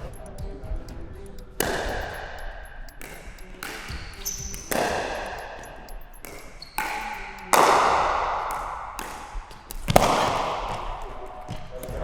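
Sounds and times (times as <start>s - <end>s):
paddle hitting plastic ball: 0.0s - 12.0s
frying pan hitting plastic ball: 1.5s - 12.0s.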